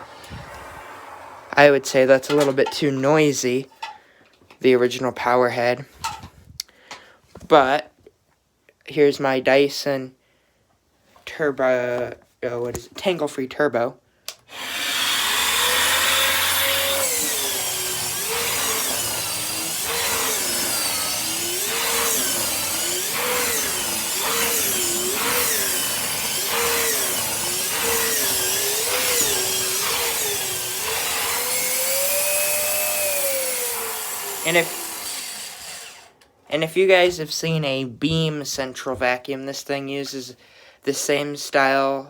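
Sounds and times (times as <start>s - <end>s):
vacuum turbine floor tool: 14.5s - 36.1s.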